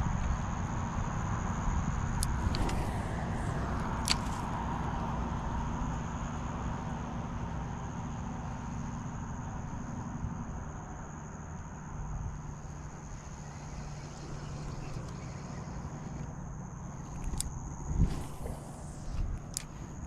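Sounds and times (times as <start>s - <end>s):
low rumble: 2.2s - 6.2s, 12.0s - 20.0s
high-pitched insect buzz: 12.4s - 20.0s.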